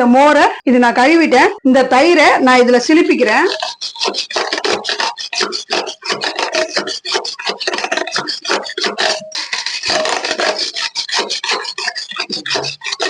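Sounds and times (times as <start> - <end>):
whisk scraping in a vessel: 2.8 - 13.0.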